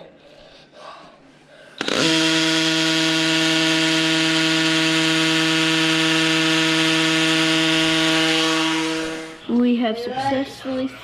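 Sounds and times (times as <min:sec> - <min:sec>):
power drill drilling into ground: 0:01.8 - 0:09.4.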